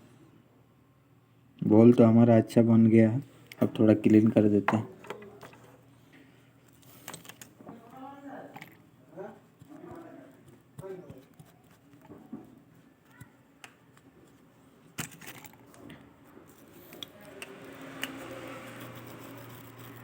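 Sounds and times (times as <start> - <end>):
small tools clicking and tapping: 6.7 - 7.7, 15.0 - 20.0.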